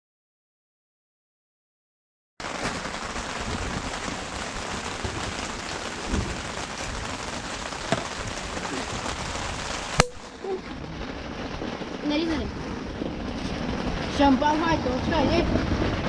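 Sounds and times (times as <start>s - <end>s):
steady rain falling: 2.4s - 16.0s.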